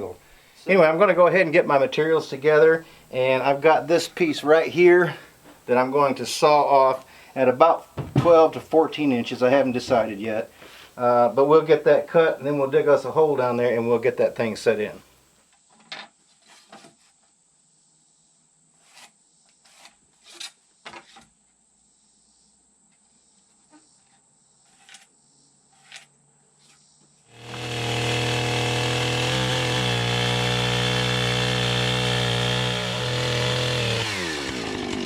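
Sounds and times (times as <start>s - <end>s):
wood knocking: 7.8s - 8.7s
chainsaw cutting timber: 27.3s - 35.0s.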